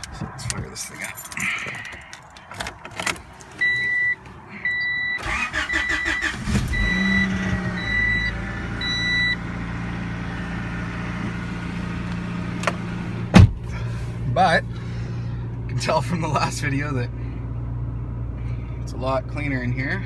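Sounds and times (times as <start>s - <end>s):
car engine cranking and idling: 0.0s - 20.0s
dashboard warning chime beeping: 3.6s - 9.4s.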